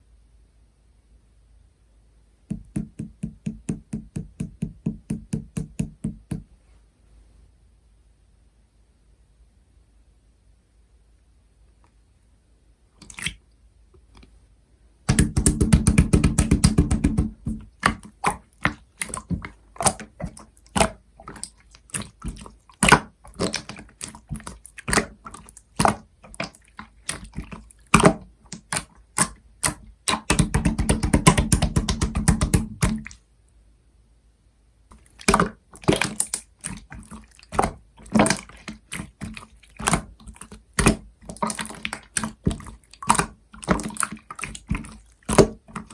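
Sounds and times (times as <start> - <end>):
slime popping and crackling: 15.1 - 33.2.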